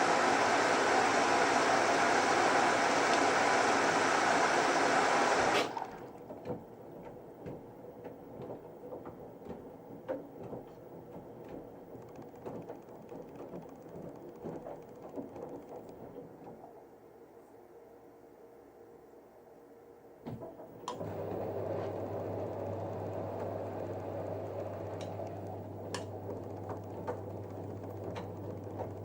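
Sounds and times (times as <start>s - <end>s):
water rushing into drum: 0.0s - 6.1s
washing machine hum: 0.0s - 17.1s, 20.2s - 29.0s
drum clicks and knocks: 6.4s - 16.6s.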